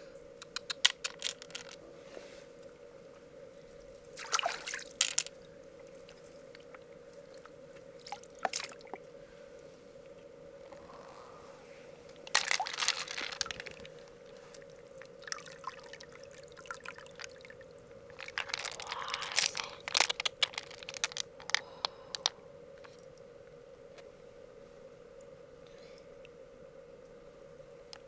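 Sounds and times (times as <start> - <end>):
steady hum: 0.0 - 28.0
mussel squishing and clicking: 0.4 - 1.8, 12.3 - 14.0, 18.1 - 22.4.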